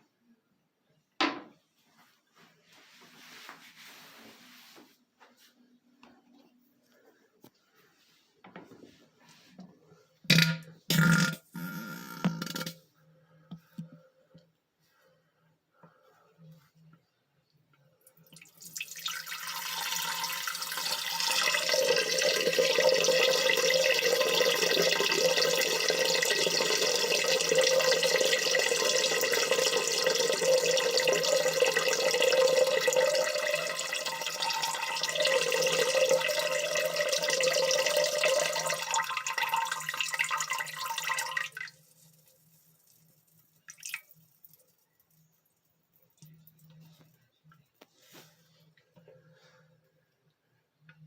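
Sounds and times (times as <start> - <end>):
urine splashing into toilet water: 18.2 - 45.0.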